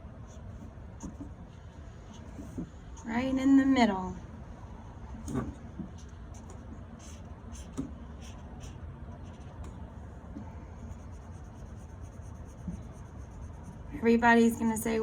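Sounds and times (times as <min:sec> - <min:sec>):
drawing tool scratching paper: 0:05.2 - 0:09.7, 0:10.7 - 0:14.0.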